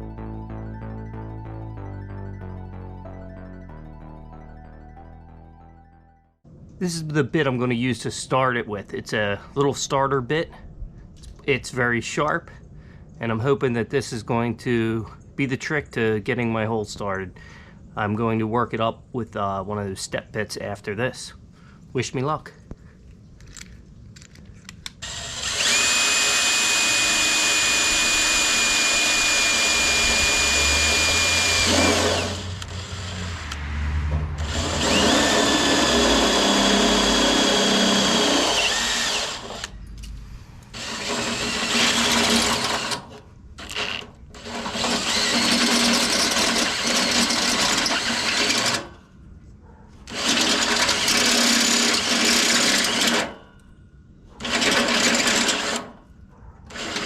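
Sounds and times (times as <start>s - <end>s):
electric drill whining: 25.0s - 33.6s, 34.4s - 39.8s, 40.7s - 48.8s, 50.1s - 53.3s, 54.4s - 55.9s, 56.7s - 57.0s.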